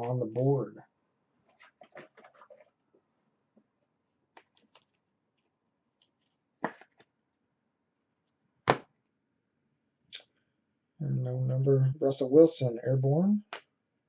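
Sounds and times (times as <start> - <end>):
cards rustling and clicking: 4.4 - 7.3.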